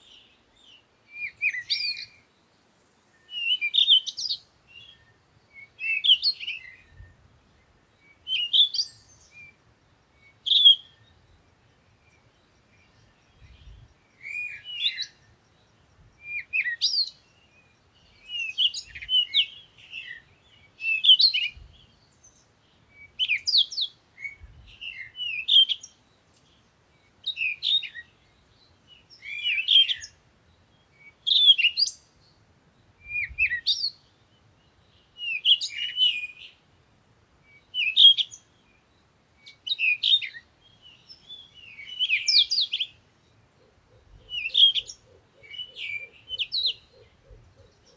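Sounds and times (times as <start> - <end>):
songbird chirping and whistling: 0.0 - 2.2, 3.2 - 7.3, 8.1 - 9.6, 10.2 - 11.2, 12.1 - 15.2, 16.2 - 17.4, 18.0 - 22.3, 22.9 - 26.0, 27.2 - 28.2, 28.9 - 30.2, 31.0 - 32.1, 33.0 - 34.1, 34.9 - 36.6, 37.5 - 38.5, 39.5 - 43.0, 44.0 - 47.9.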